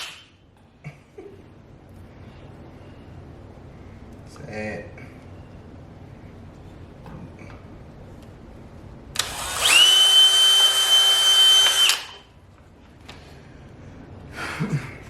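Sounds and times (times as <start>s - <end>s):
electric power tool whining: 9.2s - 12.2s.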